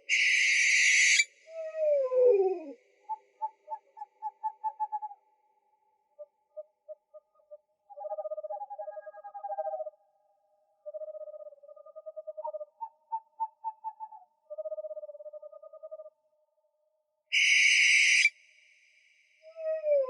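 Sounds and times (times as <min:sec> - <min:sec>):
owl trilled calls: 0:00.0 - 0:05.2, 0:06.2 - 0:10.0, 0:10.8 - 0:16.1, 0:17.3 - 0:18.4
loud high-pitched call: 0:00.1 - 0:01.3, 0:17.4 - 0:18.3.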